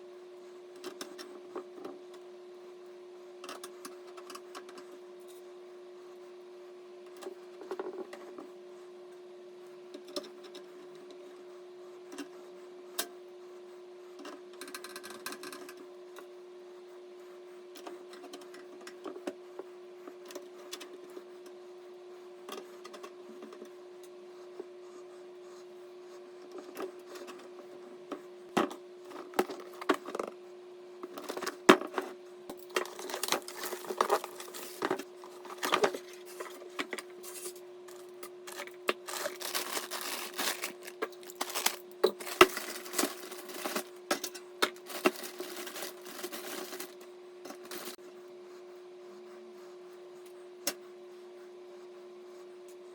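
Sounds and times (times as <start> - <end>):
steady low hum: 15.4 - 52.9
small hard parts clicking and rattling: 37.9 - 48.0.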